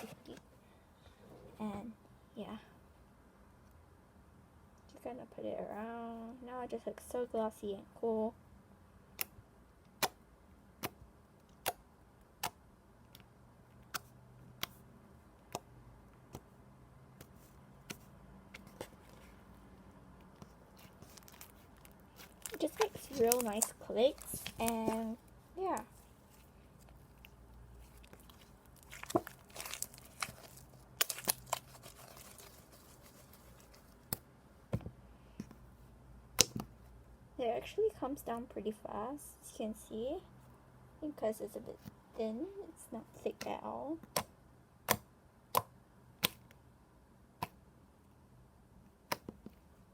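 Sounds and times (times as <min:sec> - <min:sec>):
slime squeezed by hand: 0:27.8 - 0:33.8.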